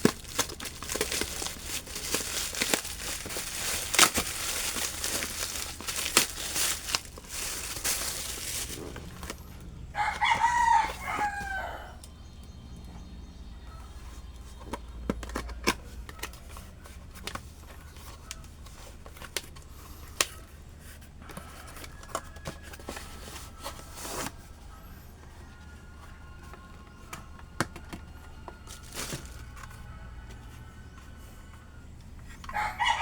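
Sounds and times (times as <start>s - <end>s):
packaging rustling and clicking: 0.0s - 9.6s, 26.4s - 29.9s
low steady hum: 0.0s - 32.6s.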